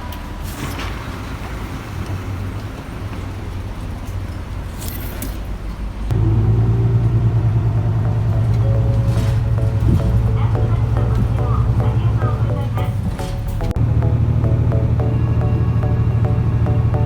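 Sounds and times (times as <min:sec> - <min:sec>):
vehicle engine rumbling: 0:00.0 - 0:17.0
steady low hum: 0:06.1 - 0:17.0.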